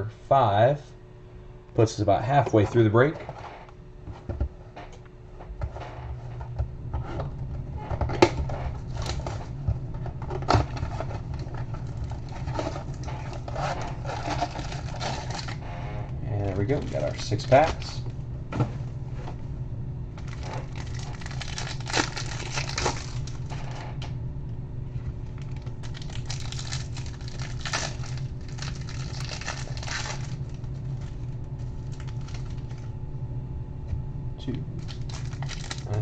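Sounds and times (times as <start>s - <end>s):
wrappers crinkling and tearing: 10.4s - 15.6s, 16.6s - 18.0s, 20.2s - 23.9s, 25.2s - 32.9s, 34.8s - 36.0s.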